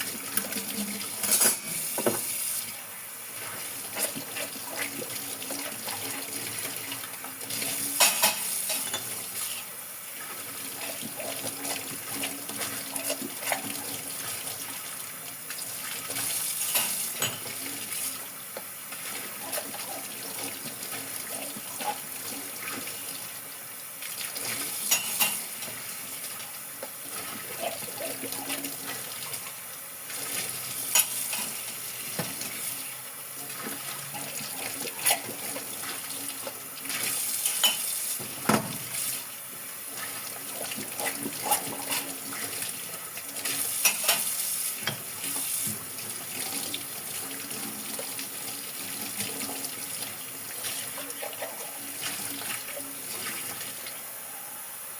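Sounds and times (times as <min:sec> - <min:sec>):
running kitchen tap: 0:00.0 - 0:54.1
dishes and cutlery clinking: 0:00.3 - 0:02.3, 0:08.0 - 0:09.2, 0:16.6 - 0:17.6, 0:24.9 - 0:25.6, 0:30.9 - 0:31.6, 0:37.4 - 0:37.9, 0:43.8 - 0:45.0.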